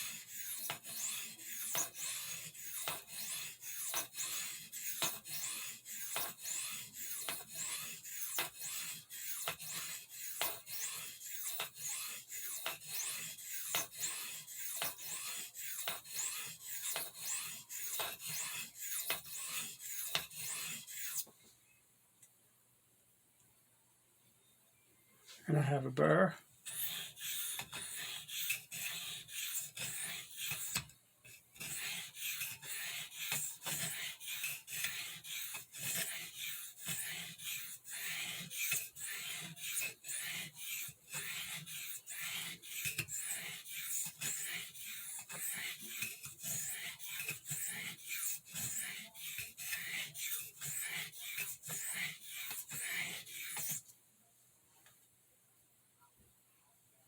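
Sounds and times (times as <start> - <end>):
knife stroked on sharpening stone: 0.0 - 21.3, 26.7 - 53.8.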